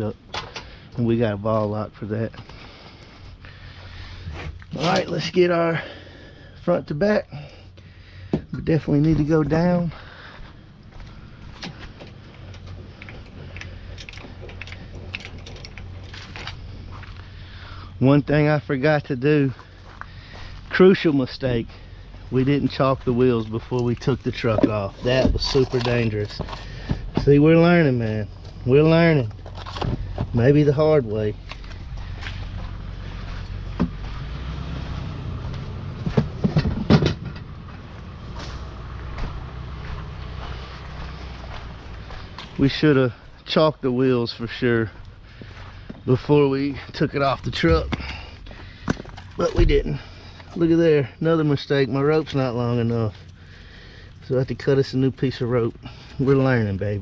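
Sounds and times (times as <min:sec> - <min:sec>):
low steady hum: 0:00.0 - 0:57.0
vehicle engine idling: 0:00.0 - 0:57.0
trailer jack clicking and ratcheting: 0:11.5 - 0:16.6.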